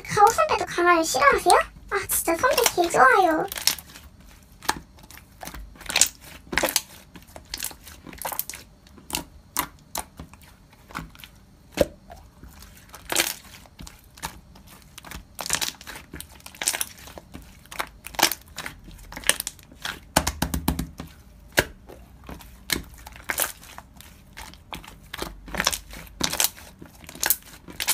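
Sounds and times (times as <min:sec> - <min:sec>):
sticky slime pops and crackles: 0:04.6 - 0:12.0, 0:15.0 - 0:21.9, 0:24.3 - 0:27.9.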